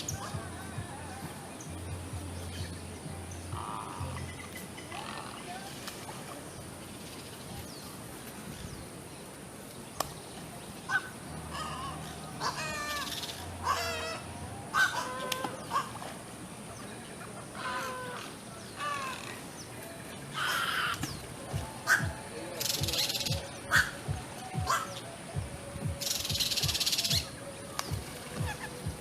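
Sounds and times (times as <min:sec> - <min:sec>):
birds giving harsh calls: 0:00.0 - 0:06.0, 0:10.8 - 0:29.0.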